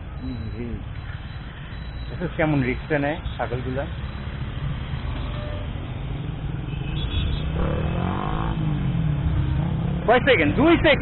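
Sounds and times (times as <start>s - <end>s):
road noise: 0.0s - 11.0s.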